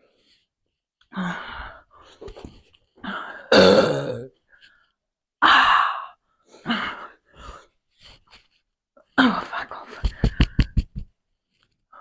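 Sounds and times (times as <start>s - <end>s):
woman burping: 3.5s - 4.3s.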